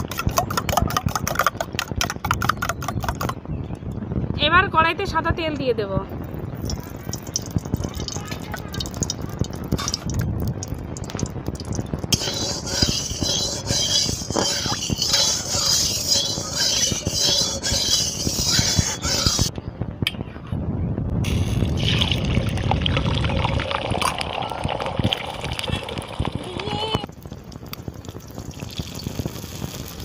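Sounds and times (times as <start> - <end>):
hot oil sizzling: 6.3 - 19.5, 21.2 - 30.0.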